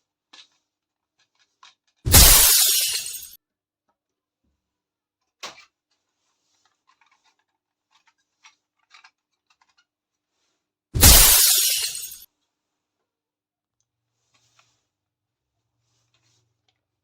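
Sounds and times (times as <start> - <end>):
faint crinkly rustle: 0.0 - 2.0, 3.9 - 10.8, 13.9 - 17.0.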